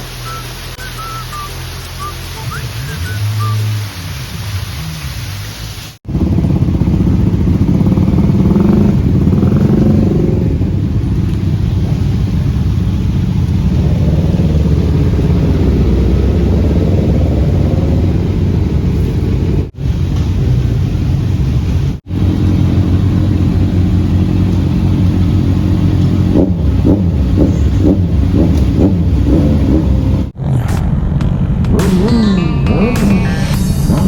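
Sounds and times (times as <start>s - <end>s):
motorcycle engine revving: 6.0s - 20.8s, 22.0s - 34.0s.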